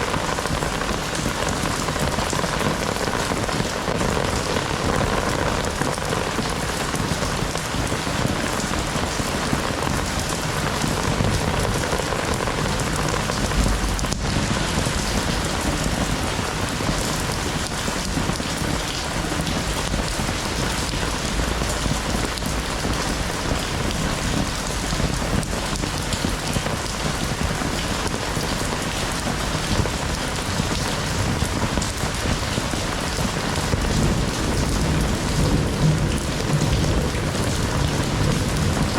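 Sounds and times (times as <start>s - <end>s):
heavy rain falling: 0.0s - 38.9s
low rumbles: 11.1s - 17.3s.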